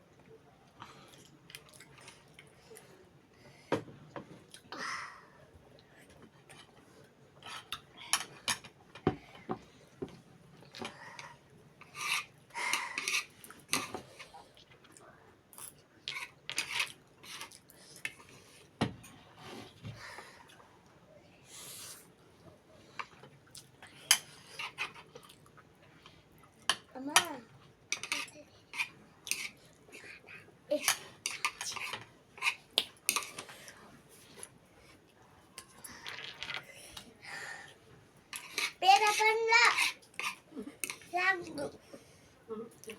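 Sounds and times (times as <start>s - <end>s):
spoon scraping a dish: 11.8s - 12.3s, 13.0s - 14.0s, 28.0s - 29.6s, 30.8s - 33.5s, 38.3s - 41.1s
cutlery clinking against a dish: 27.9s - 29.6s.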